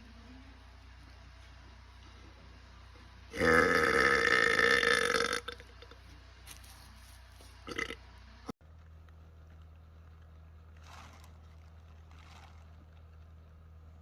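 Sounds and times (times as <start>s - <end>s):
man burping: 3.4s - 6.0s, 7.7s - 8.0s.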